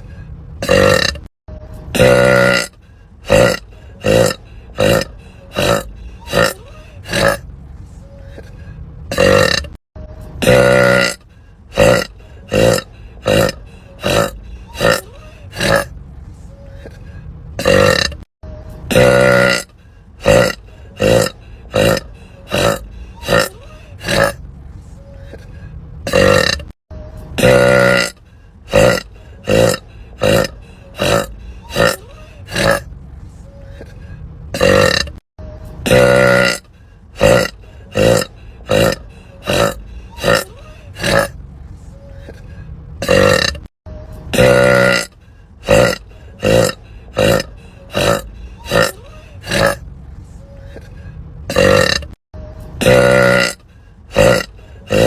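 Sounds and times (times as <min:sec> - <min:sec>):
woman burping: 0:00.6 - 0:01.3, 0:01.9 - 0:07.4, 0:09.1 - 0:09.8, 0:10.4 - 0:11.2, 0:11.8 - 0:15.9, 0:17.6 - 0:18.3, 0:18.9 - 0:24.4, 0:26.1 - 0:26.8, 0:27.4 - 0:32.8, 0:34.6 - 0:35.2, 0:35.8 - 0:36.6, 0:43.0 - 0:43.7, 0:44.3 - 0:45.1, 0:51.5 - 0:52.2, 0:52.8 - 0:53.6.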